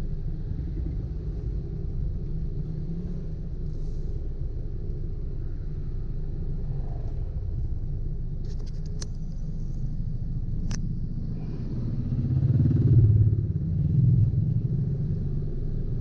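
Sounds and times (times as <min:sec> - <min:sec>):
vehicle rumbling on road: 0:00.0 - 0:16.0.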